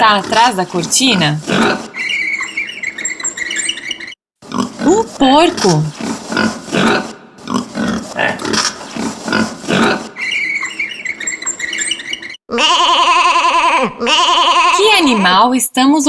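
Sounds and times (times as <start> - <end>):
pig grunting and squealing: 0.0 - 3.8, 4.4 - 15.4
sheep bleating: 12.5 - 15.2.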